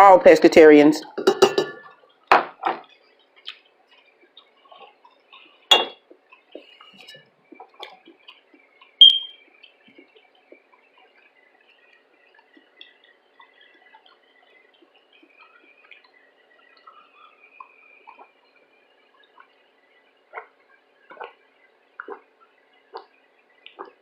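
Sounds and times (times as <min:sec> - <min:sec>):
utensils clinking against a dish: 0:01.2 - 0:02.0, 0:05.7 - 0:06.0.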